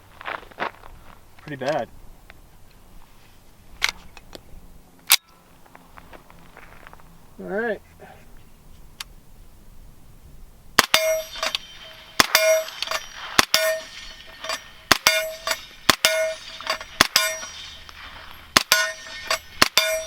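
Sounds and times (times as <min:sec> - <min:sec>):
steel target ringing ping: 0:10.8 - 0:17.9, 0:18.5 - 0:20.0
suppressed gunshots: 0:10.8 - 0:20.0.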